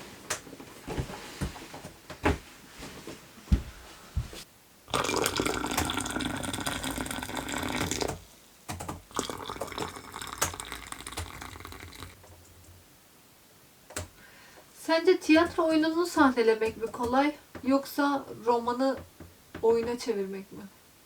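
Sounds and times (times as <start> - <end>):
tea pouring into glasses: 4.9 - 8.2, 9.1 - 12.2.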